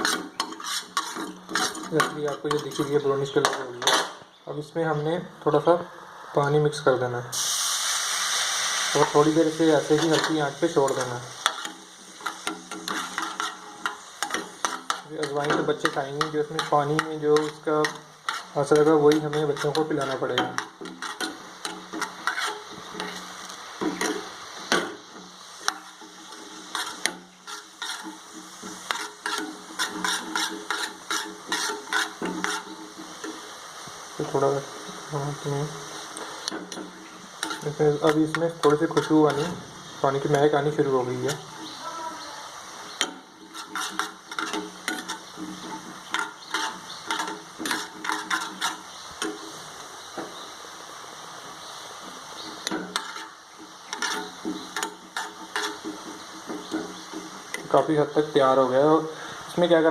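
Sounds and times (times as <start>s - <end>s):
spoon stirring in a pan: 0.0s - 4.1s, 8.5s - 50.4s, 51.0s - 59.9s
spoon scraping and clinking pan: 0.0s - 4.2s, 9.3s - 33.5s, 36.2s - 41.8s, 42.9s - 49.6s, 52.4s - 58.4s
water simmering: 7.3s - 59.9s.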